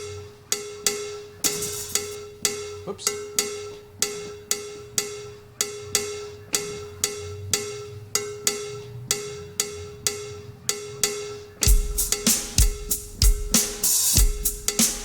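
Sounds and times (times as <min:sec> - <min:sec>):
drum kit with kick and cymbals: 0:00.0 - 0:02.6, 0:11.0 - 0:15.0.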